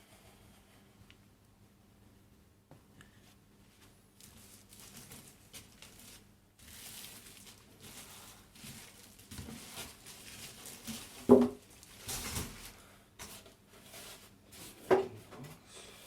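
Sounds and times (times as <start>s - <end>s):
plastic and foam rustling: 3.6s - 15.6s.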